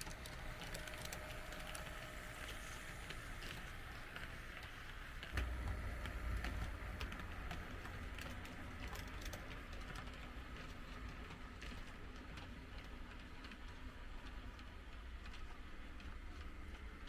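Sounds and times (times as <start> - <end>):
model train wheels clicking: 0.0 - 17.0
low rumble: 5.4 - 8.5.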